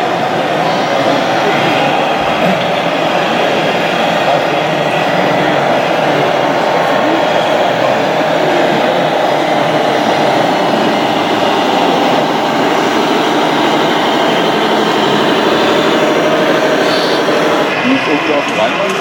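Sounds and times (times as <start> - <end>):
even hum: 0.0 - 19.0.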